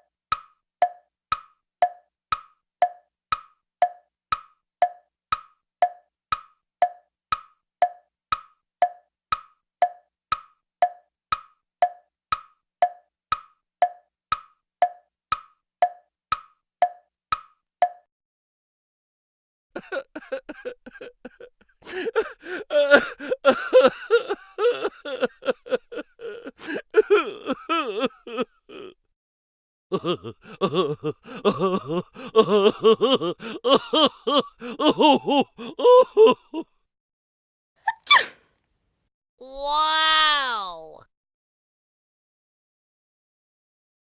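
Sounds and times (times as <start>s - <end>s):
cartoon voice gasping and chattering: 37.9s - 38.4s, 39.4s - 41.0s.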